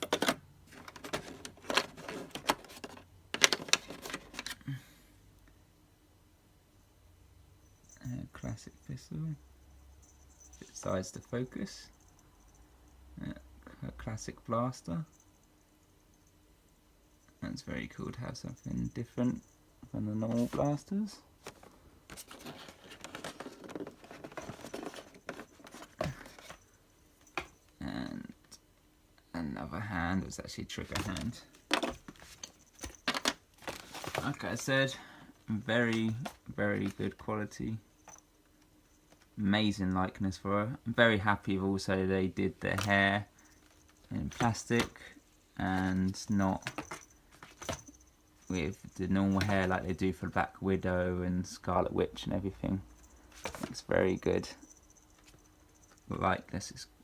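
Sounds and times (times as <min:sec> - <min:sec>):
packaging rustling: 0:00.0 - 0:04.6, 0:21.4 - 0:26.6, 0:30.9 - 0:34.7.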